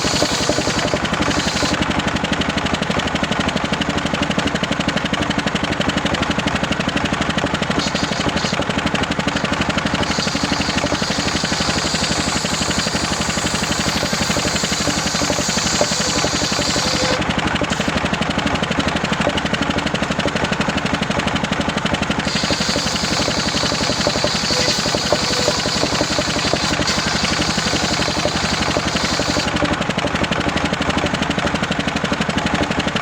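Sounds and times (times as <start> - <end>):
circular saw running: 0.0 - 33.0
high hiss: 10.0 - 17.2.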